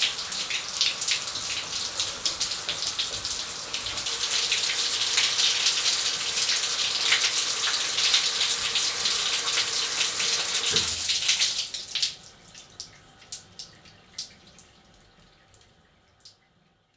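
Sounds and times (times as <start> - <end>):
shower spray running: 0.0 - 11.6
water dripping: 0.0 - 16.6.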